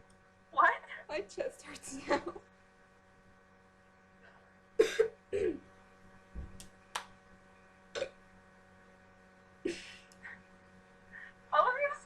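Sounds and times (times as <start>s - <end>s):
electrical hum: 0.0s - 12.0s
low thump: 6.3s - 6.6s.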